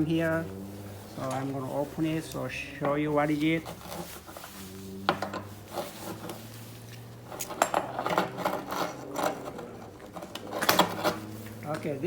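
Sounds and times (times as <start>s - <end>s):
metal panel clicks and scraping: 7.4s - 11.3s.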